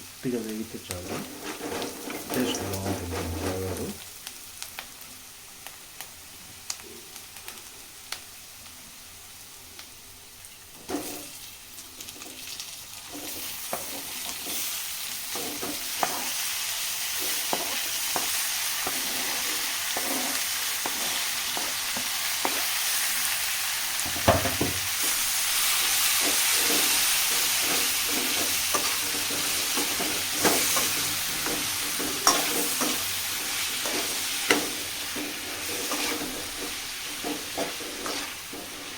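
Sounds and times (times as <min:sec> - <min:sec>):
food sizzling in hot oil: 0:00.0 - 0:38.9
spatula scraping a pan: 0:01.0 - 0:04.0, 0:10.9 - 0:11.4, 0:13.1 - 0:23.1, 0:25.0 - 0:38.9.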